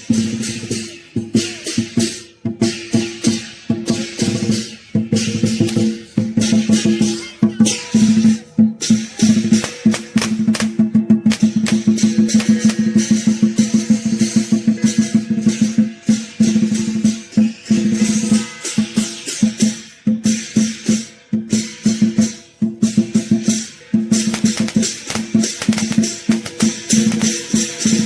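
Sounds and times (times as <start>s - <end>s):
cymbals clashing: 9.4s - 13.3s, 23.6s - 28.0s
drum beaten fast: 9.6s - 13.0s, 24.3s - 27.7s.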